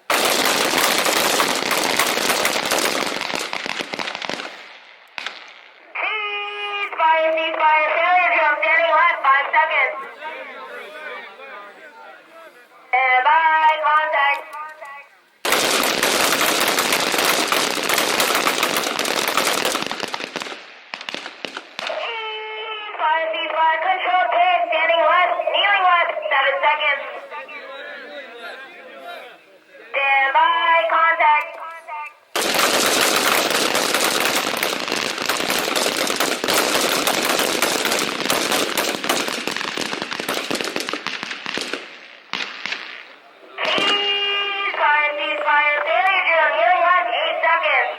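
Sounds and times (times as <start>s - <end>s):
rifles firing rapidly: 0.0s - 4.6s, 15.4s - 22.1s, 32.3s - 44.4s.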